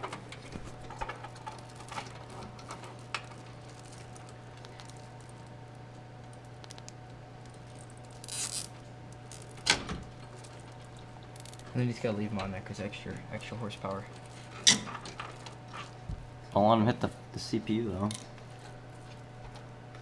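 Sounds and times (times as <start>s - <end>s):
cables rustling and clicking: 0.0s - 16.2s
zip tie ratcheting: 8.2s - 8.7s.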